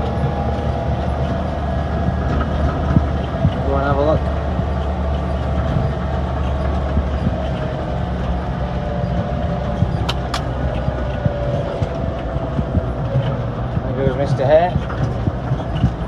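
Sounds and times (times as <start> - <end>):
tractor engine running: 9.4 - 11.4
loose rattling: 9.9 - 10.6
sharp clicks: 10.0 - 10.6.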